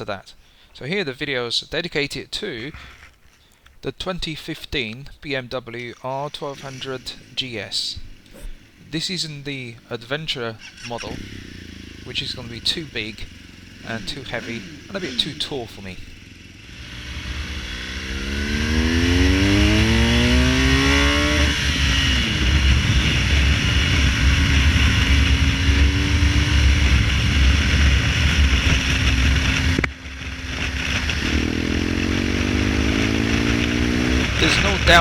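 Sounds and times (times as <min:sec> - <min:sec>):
motorcycle engine accelerating: 0:06.2 - 0:35.0.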